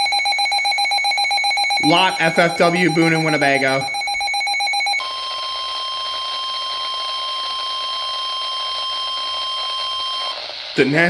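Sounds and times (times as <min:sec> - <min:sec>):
rapid buzzing data tones: 0:00.0 - 0:07.7
steady alarm tone: 0:00.0 - 0:11.0.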